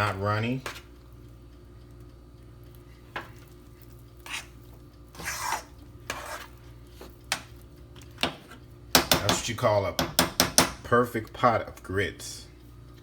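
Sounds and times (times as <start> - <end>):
spoon scraping a pot: 4.2 - 7.2.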